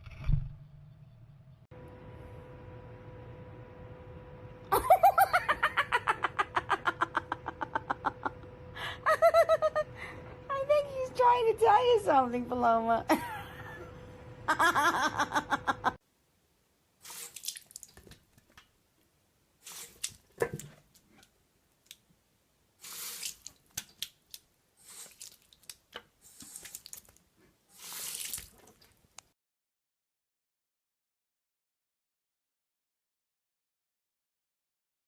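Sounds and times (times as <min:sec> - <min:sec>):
water splashing and dripping: 0:17.2 - 0:18.2, 0:27.8 - 0:29.0.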